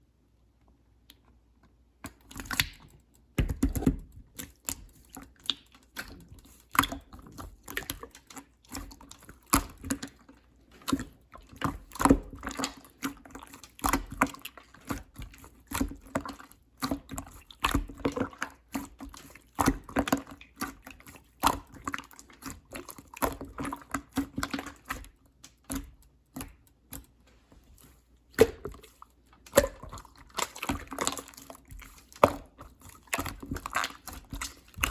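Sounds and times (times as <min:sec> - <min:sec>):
slime squeezed with wet clicks: 0:02.0 - 0:08.1, 0:28.3 - 0:34.9.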